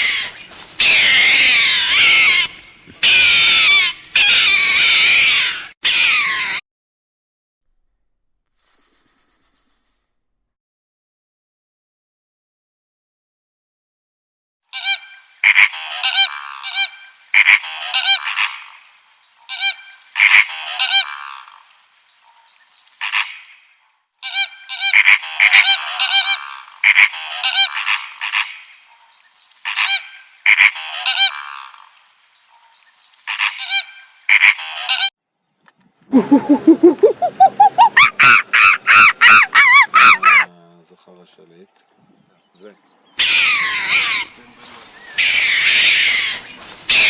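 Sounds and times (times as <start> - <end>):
animal call of rising pulses: 36.1 - 38.2
geese honking: 36.2 - 40.5, 43.2 - 47.0.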